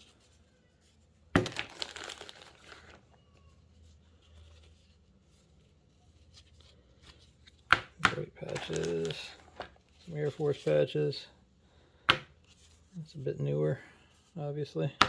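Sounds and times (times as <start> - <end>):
bag crinkling and rustling: 1.4 - 3.2, 8.2 - 11.3.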